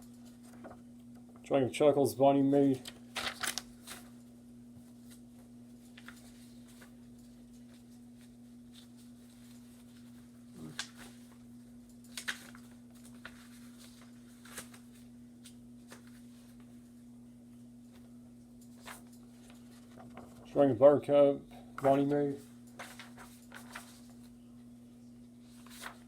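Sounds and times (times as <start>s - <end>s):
low electrical hum: 0.0s - 26.0s
paper sheets rustling: 2.6s - 4.2s, 4.8s - 16.9s, 18.7s - 20.8s, 21.8s - 24.4s, 25.4s - 26.0s.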